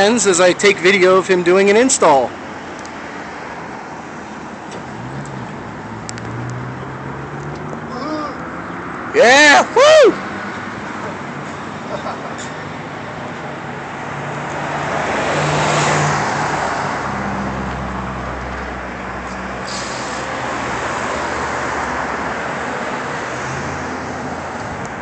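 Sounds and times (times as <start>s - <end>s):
passing vehicles: 0.0s - 25.0s.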